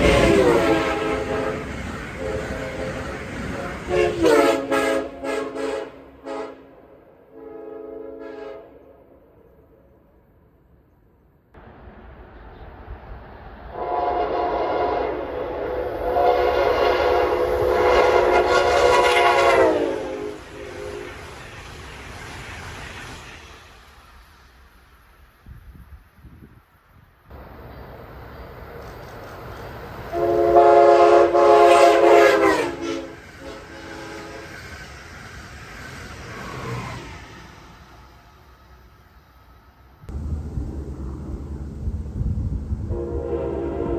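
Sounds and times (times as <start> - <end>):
train air horn blast: 0.0 - 9.0, 13.7 - 21.3, 30.1 - 34.7, 40.1 - 43.9
passing train noise: 0.0 - 43.9.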